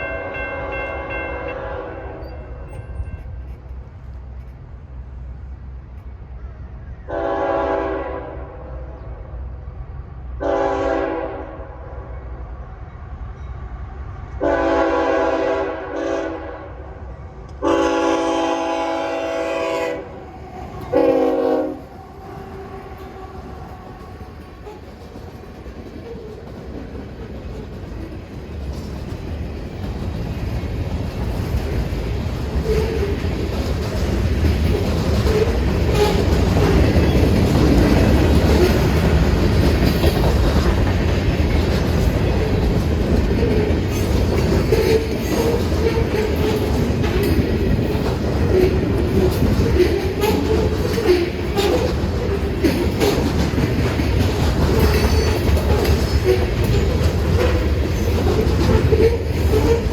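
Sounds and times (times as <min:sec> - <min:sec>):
locomotive air horn blasts: 0:00.0 - 0:02.6, 0:07.1 - 0:08.9, 0:10.4 - 0:12.0, 0:14.4 - 0:16.8, 0:17.6 - 0:20.1, 0:20.9 - 0:21.9
train rumble: 0:00.0 - 0:59.9
wheels clattering over rail joints: 0:23.1 - 0:59.9.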